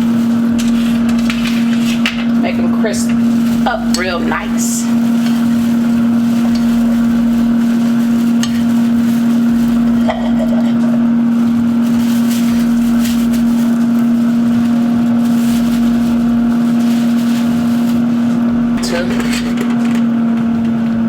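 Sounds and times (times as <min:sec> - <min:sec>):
electric motor hum: 0:00.0 - 0:21.0
kitchen utensils clicking: 0:00.5 - 0:03.2, 0:18.8 - 0:20.3.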